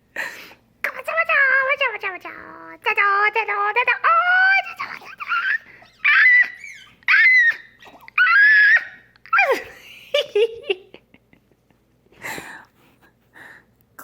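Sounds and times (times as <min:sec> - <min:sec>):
woman making high squeaks: 0:04.6 - 0:09.1.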